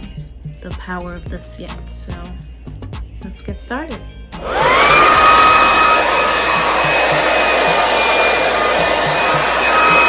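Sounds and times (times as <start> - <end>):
blow dryer running: 4.4 - 10.0.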